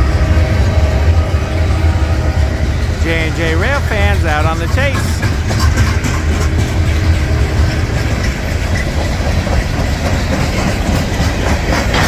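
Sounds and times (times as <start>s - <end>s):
freight train rumbling past: 0.0s - 12.0s
wheels clicking: 2.4s - 12.0s.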